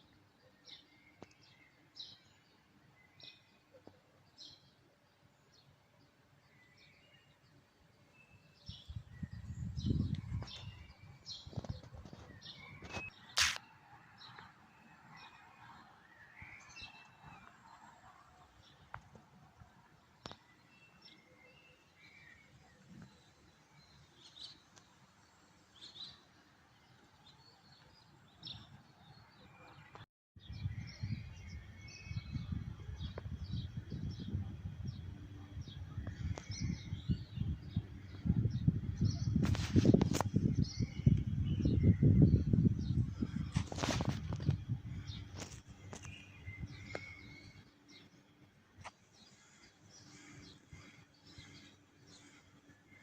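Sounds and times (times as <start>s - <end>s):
small birds chirping: 0.0s - 53.0s
sharp click: 13.4s - 13.7s.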